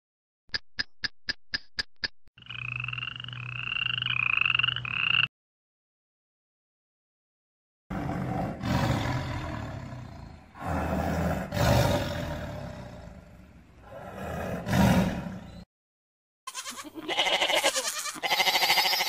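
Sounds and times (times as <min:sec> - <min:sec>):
large animal roaring: 0:07.9 - 0:15.6.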